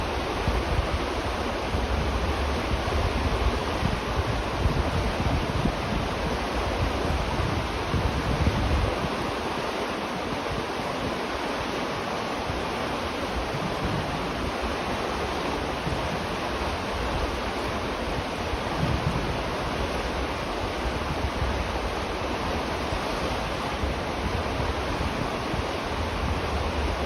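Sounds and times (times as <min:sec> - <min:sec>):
river water flowing: 0:00.0 - 0:27.0.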